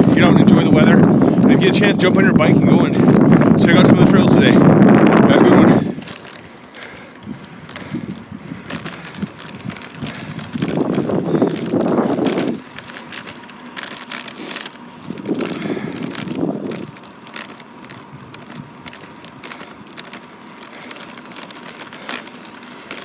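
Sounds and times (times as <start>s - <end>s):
wind rumble on microphone: 0.0s - 6.3s, 7.2s - 13.3s, 15.0s - 17.1s, 17.8s - 20.0s
bicycle clicking and rattling: 0.0s - 23.0s.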